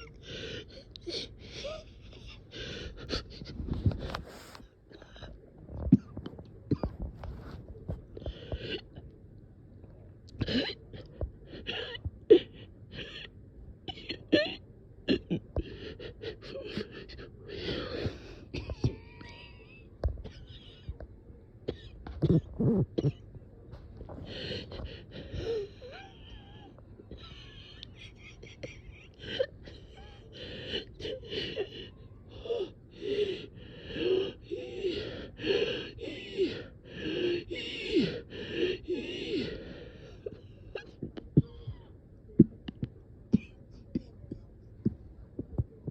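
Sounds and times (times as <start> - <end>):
person breathing fast with wheezing: 0.0 - 6.2, 6.8 - 8.9, 15.6 - 19.8, 23.8 - 41.9
person gasping for breath: 29.2 - 41.9.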